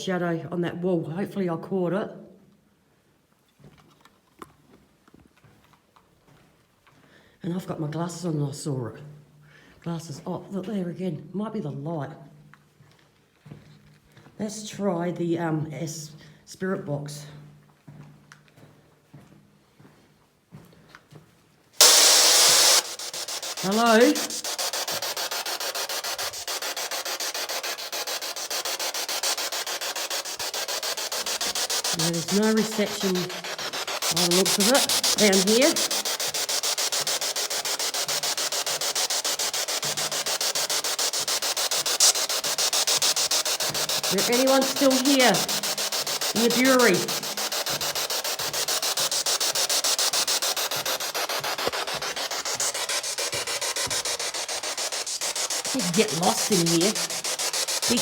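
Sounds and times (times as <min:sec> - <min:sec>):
chopped radio static hiss: 0:21.8 - 0:26.9, 0:30.2 - 0:36.7, 0:38.2 - 0:58.0.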